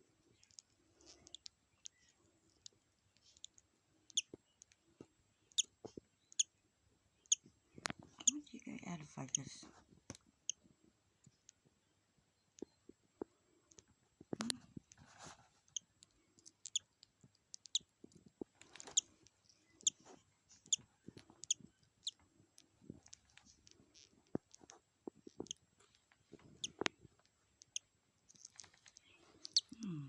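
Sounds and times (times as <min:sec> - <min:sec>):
small clicks and scratches: 0:00.2 - 0:06.5, 0:12.5 - 0:29.7
chick peeping: 0:15.7 - 0:16.9, 0:18.8 - 0:19.1, 0:19.7 - 0:22.2, 0:27.6 - 0:30.0.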